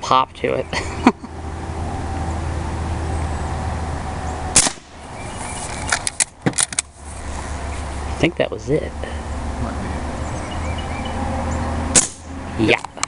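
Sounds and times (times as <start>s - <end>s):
air rifle shot pop: 4.6s - 4.9s, 12.0s - 12.2s.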